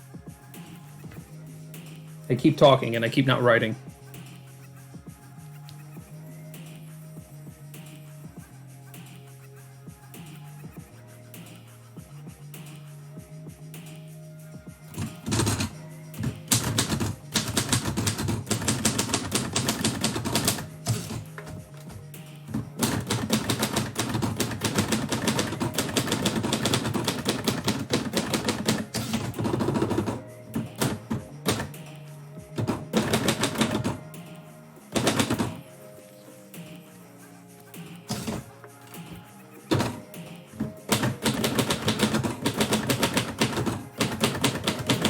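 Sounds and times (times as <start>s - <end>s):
typewriter keys clacking: 15.0s - 31.8s, 32.6s - 34.1s, 34.9s - 35.6s, 38.1s - 38.5s, 39.2s - 45.0s.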